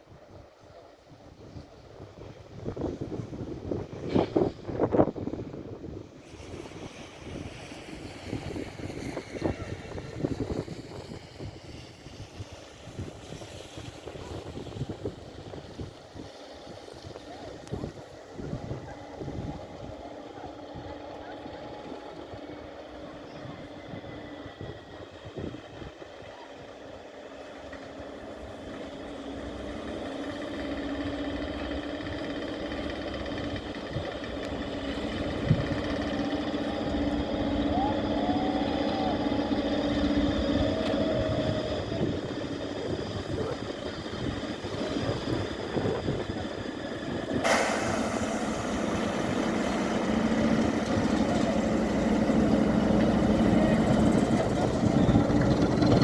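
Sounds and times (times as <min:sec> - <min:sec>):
diesel locomotive rumble: 0:00.0 - 0:56.0
wind buffeting microphone: 0:01.1 - 0:56.0.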